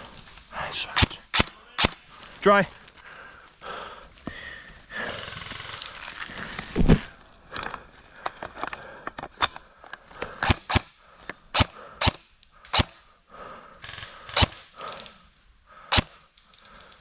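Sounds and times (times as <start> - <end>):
airsoft guns firing: 1.0 - 2.1, 10.4 - 10.9, 11.5 - 13.0, 13.8 - 14.9, 15.9 - 16.2.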